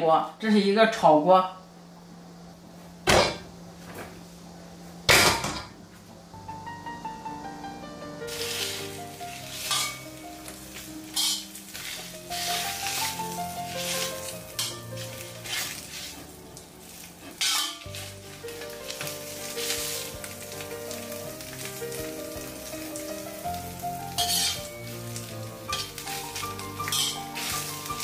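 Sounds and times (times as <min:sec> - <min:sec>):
soft background music: 0:06.0 - 0:28.0
lard sizzling in a pot: 0:08.0 - 0:28.0
stirring scrapes: 0:08.3 - 0:10.0, 0:11.1 - 0:16.4, 0:25.7 - 0:27.9.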